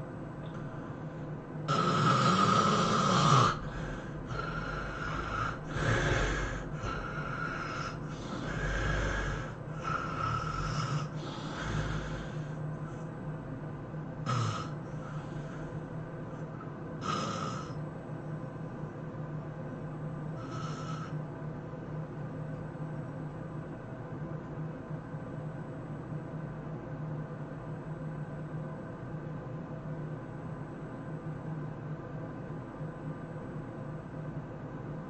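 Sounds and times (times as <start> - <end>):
sleeping breaths: 0.6 - 13.1, 14.2 - 17.8, 20.4 - 21.2
person snoring heavily: 1.7 - 12.6, 14.2 - 15.8, 17.0 - 17.8, 20.4 - 21.2.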